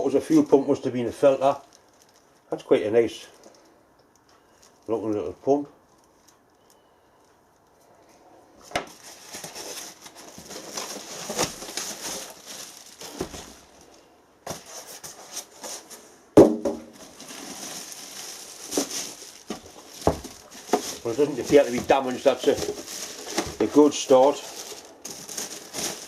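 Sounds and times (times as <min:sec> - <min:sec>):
packaging rustling and crinkling: 0:00.0 - 0:16.1, 0:16.8 - 0:26.0.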